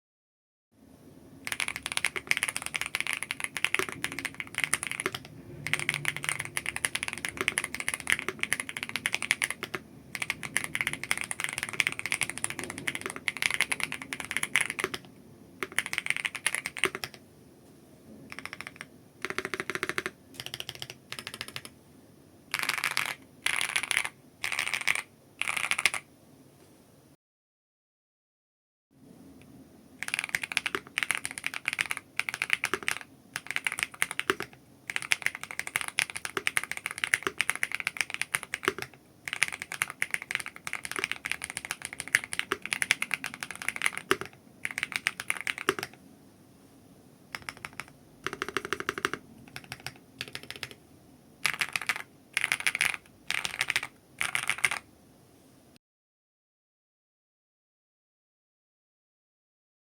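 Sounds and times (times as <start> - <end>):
keyboard typing: 1.4 - 17.2, 18.2 - 21.8, 22.5 - 26.1, 30.0 - 46.0, 47.3 - 50.8, 51.4 - 54.9.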